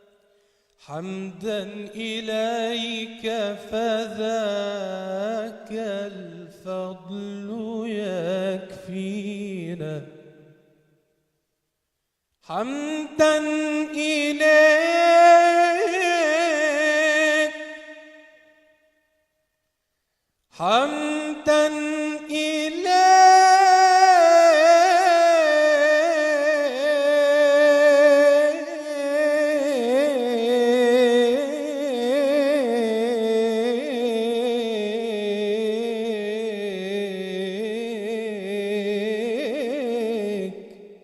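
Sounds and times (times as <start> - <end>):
man singing devotional chant: 0.8 - 10.6, 12.4 - 18.3, 20.5 - 40.8.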